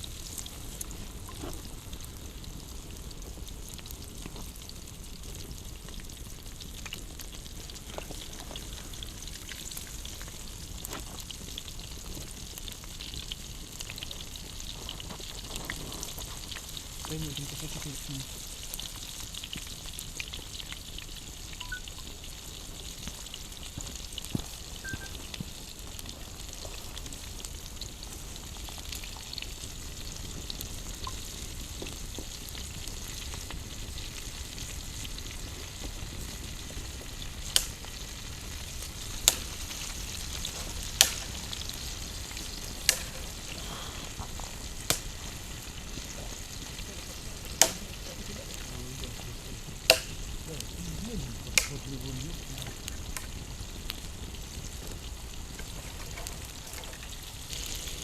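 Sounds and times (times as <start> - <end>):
food sizzling over campfire: 0.0 - 58.0
sharp loud pops: 49.9 - 50.2.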